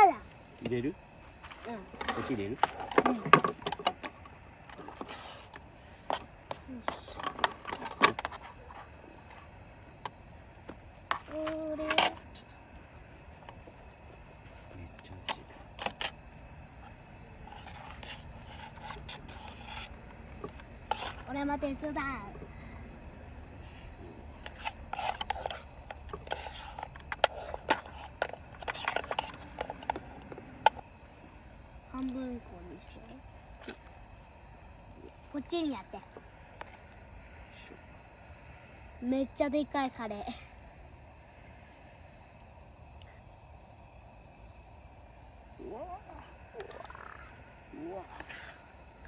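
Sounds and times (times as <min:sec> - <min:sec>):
utensils scraping dishes: 0:17.4 - 0:21.5, 0:24.4 - 0:30.8.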